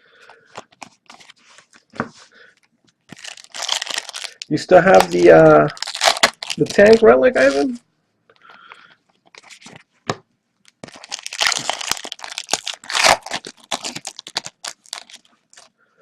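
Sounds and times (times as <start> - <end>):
card wrappers tearing and crinkling: 3.1 - 7.8, 9.3 - 9.8, 10.6 - 15.7.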